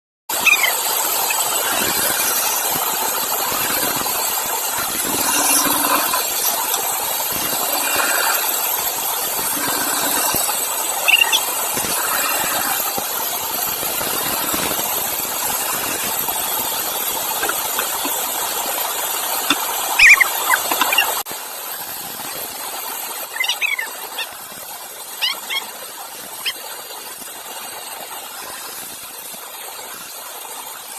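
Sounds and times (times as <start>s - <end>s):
sawmill saw cutting wood: 0.3s - 21.3s.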